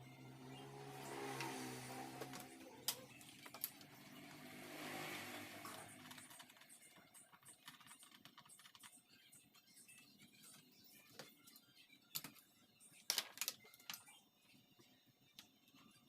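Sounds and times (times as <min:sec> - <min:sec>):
faint engine hum: 0:00.0 - 0:07.2.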